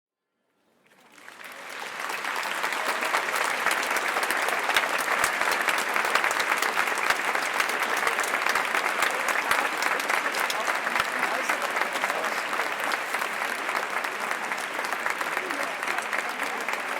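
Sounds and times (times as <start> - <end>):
crowd applauding: 0.8 - 16.9.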